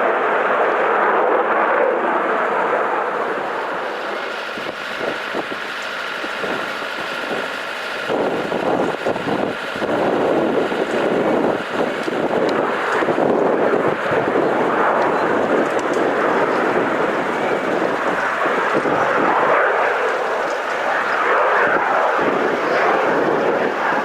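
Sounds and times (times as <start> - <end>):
aircraft engine rushing and whine: 0.0 - 24.0
wind buffeting microphone: 3.4 - 24.0.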